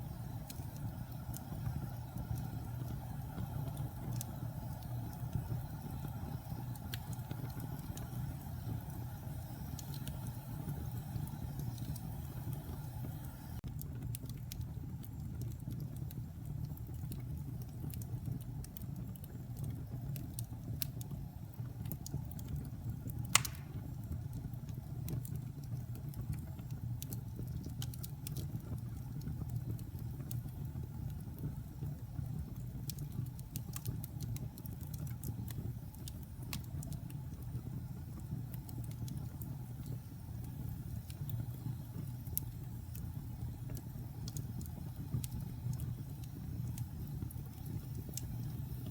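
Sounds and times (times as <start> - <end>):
fire crackling: 0.0 - 48.9
fire flames rumbling: 0.0 - 48.9
loud wood pop: 23.4 - 23.8.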